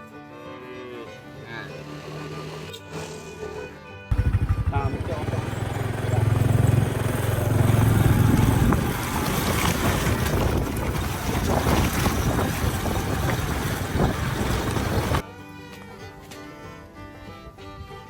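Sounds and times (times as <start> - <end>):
wind buffeting microphone: 4.1 - 15.2.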